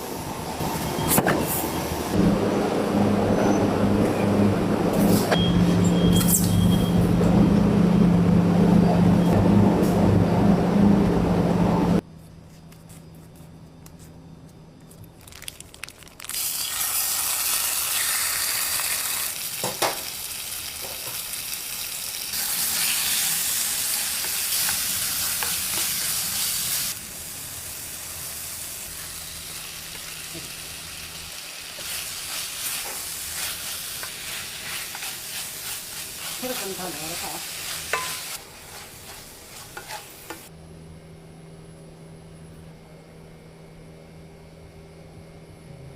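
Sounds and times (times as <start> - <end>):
loud machinery hum: 0.0 - 12.0
steady sizzling hiss: 15.2 - 40.6.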